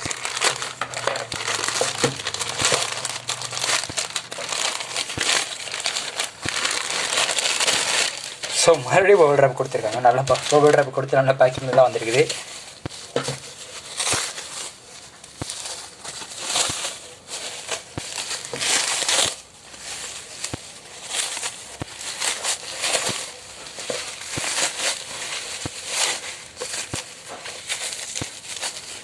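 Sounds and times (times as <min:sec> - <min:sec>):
bubble wrap crinkling: 0:00.0 - 0:29.0.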